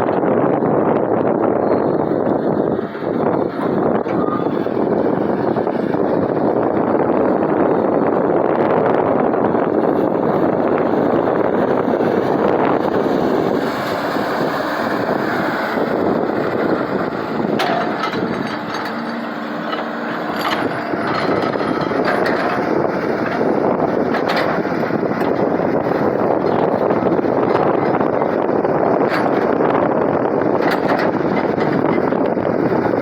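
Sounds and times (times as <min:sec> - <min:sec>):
excavator diesel engine: 0:00.0 - 0:33.0
wind buffeting microphone: 0:00.0 - 0:33.0.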